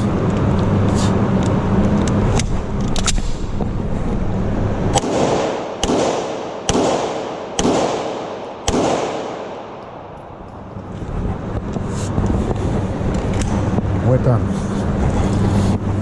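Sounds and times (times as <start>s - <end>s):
handgun shots with ringing echo: 4.9s - 10.3s.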